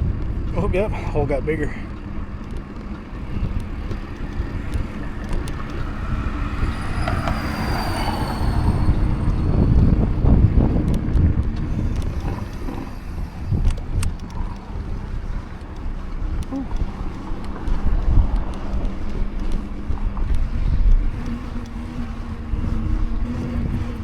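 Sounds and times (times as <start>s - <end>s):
bicycle tyre rumble: 0.0s - 24.0s
wind on microphone: 0.0s - 24.0s
faint falling whine: 1.7s - 18.5s.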